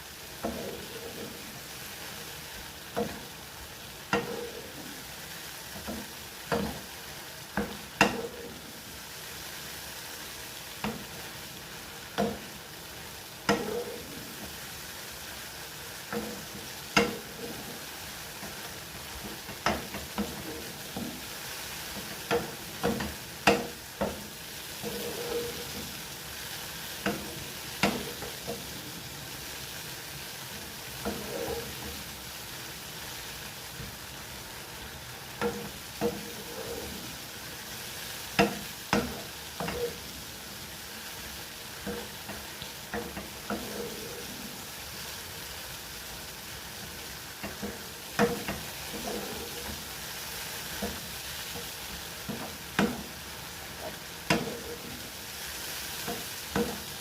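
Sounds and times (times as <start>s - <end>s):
mushrooms sizzling in oil: 0.0s - 57.0s
utensil scraping pan: 0.4s - 1.6s, 4.1s - 5.1s, 7.6s - 8.8s, 13.5s - 14.6s, 16.0s - 26.1s, 26.9s - 29.1s, 30.8s - 32.1s, 35.4s - 40.3s, 41.7s - 44.8s, 47.4s - 57.0s.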